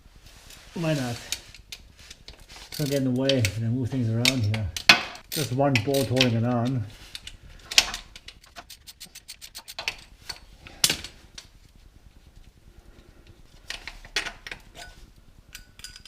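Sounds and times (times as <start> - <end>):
ratchet wrench clicking: 8.4 - 10.0.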